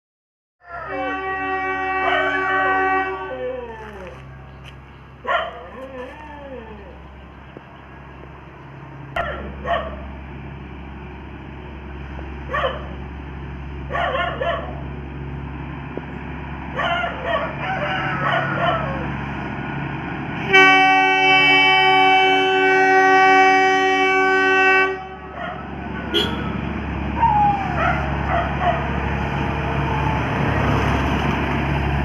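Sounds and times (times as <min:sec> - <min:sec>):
train rumbling: 0:00.6 - 0:32.0
train horn blast: 0:00.7 - 0:03.8, 0:20.4 - 0:25.4, 0:26.0 - 0:26.7
dog barking: 0:02.0 - 0:02.7, 0:05.2 - 0:06.1, 0:09.2 - 0:10.0, 0:12.5 - 0:13.0, 0:13.9 - 0:14.8, 0:16.7 - 0:19.0, 0:25.3 - 0:25.7, 0:27.7 - 0:28.9.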